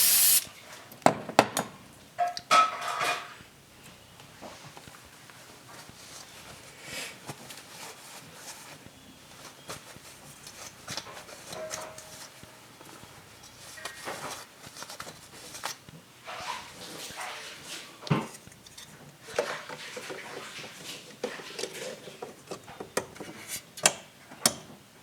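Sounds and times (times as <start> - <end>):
hissy rubbing: 0.0 - 0.5.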